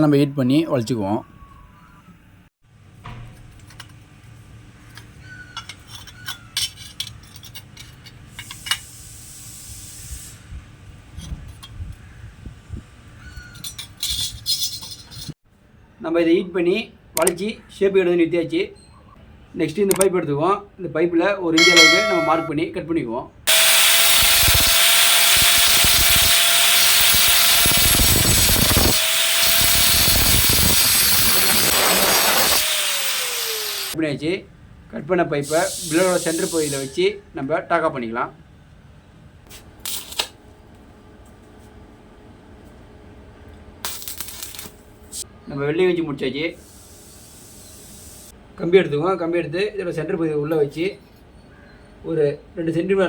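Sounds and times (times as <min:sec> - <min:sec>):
power tool cutting pipe: 0:23.5 - 0:34.0
hissing burst: 0:35.5 - 0:36.9.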